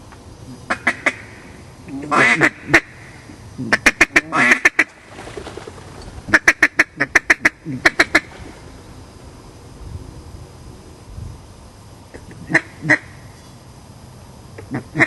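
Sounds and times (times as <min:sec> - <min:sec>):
duck quacking: 0:00.7 - 0:01.3, 0:01.9 - 0:02.9, 0:03.6 - 0:04.9, 0:06.3 - 0:08.3, 0:12.4 - 0:13.1, 0:14.6 - 0:15.0.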